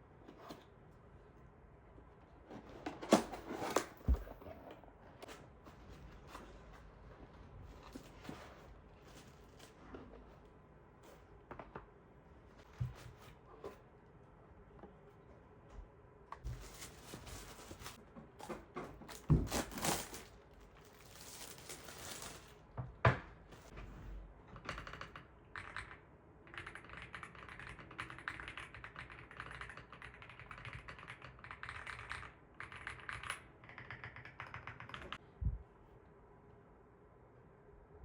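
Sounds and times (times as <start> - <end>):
handling rustles: 16.4 - 22.6
mechanical keyboard typing: 24.6 - 35.2.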